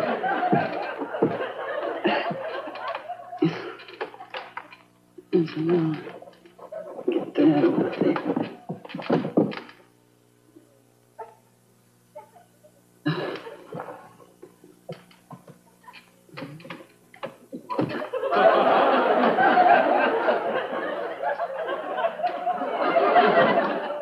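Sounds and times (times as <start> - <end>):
audience laughter: 0.0 - 4.6, 6.6 - 8.6, 17.6 - 24.0
sharp knocks: 7.1 - 9.7.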